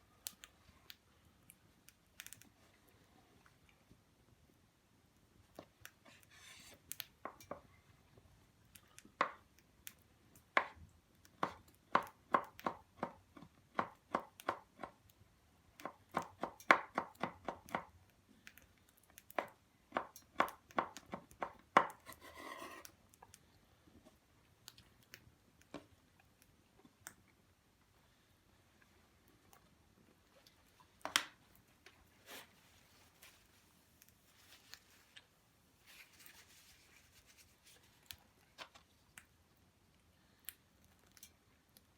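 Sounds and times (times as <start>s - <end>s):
scraping rustle: 35.8s - 38.0s.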